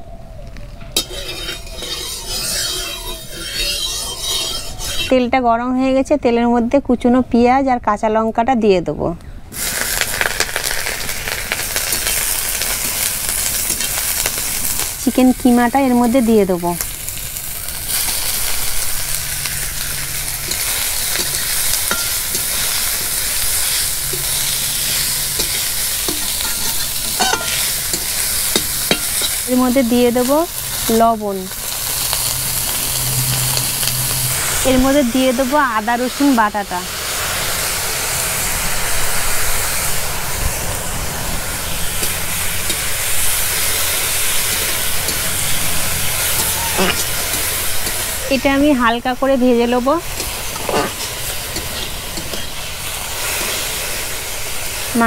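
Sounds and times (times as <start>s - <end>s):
meat sizzling in hot oil: 1.0s - 5.2s, 9.5s - 55.0s
spatula scraping a pan: 1.0s - 5.3s, 11.6s - 14.9s, 19.4s - 29.5s, 41.9s - 53.7s.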